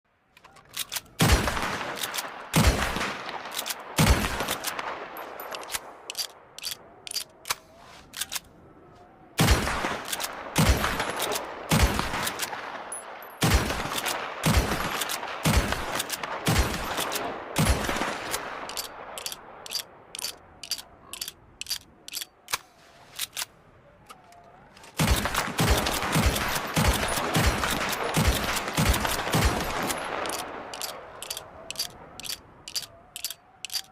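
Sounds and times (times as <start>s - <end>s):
pistol shots with echo: 1.2s - 6.1s, 9.4s - 19.8s, 25.0s - 33.0s.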